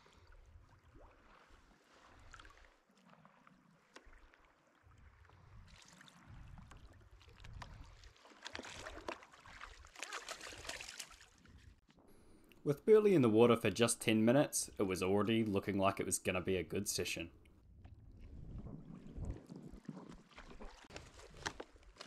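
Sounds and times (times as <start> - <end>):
faint water sounds: 0.0 - 22.0.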